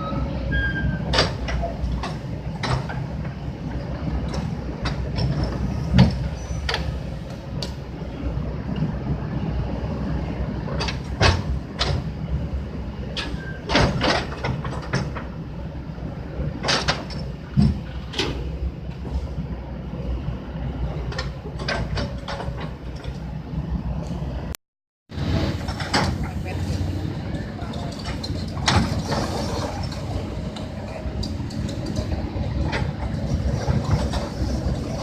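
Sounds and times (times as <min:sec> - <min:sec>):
heavy vehicle engine rumbling: 0:00.0 - 0:35.0
metallic clanks and knocks: 0:27.6 - 0:30.1.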